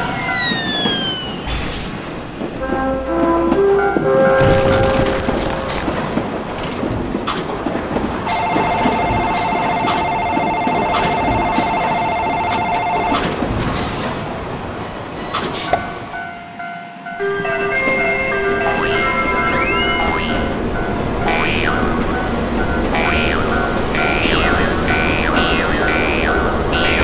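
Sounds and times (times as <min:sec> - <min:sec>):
wheels clacking over rail joints: 0:00.0 - 0:16.4, 0:17.5 - 0:27.0
train rushing past: 0:00.0 - 0:27.0
level-crossing alarm ringing: 0:07.9 - 0:13.5, 0:15.7 - 0:27.0
melody tones: 0:17.1 - 0:27.0.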